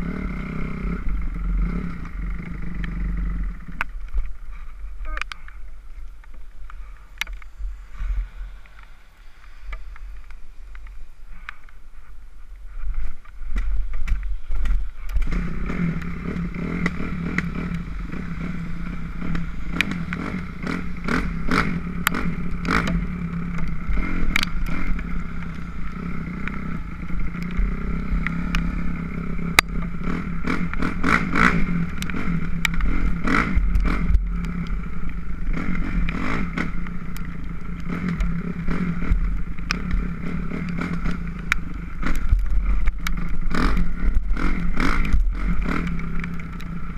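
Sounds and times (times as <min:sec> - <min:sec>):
dirt bike engine running: 0:00.0 - 0:46.9
sharp clicks and clatter: 0:12.8 - 0:46.8.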